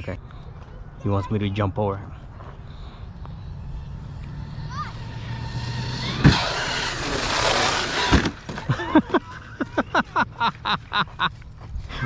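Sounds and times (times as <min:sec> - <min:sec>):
toy truck motor and tyres: 0:03.0 - 0:08.8
truck landing thump: 0:06.2 - 0:08.7.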